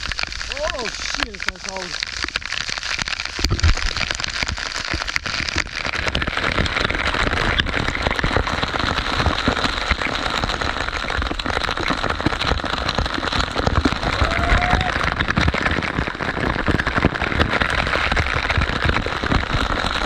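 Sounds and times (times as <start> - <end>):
waterfall rushing: 13.8 - 15.4.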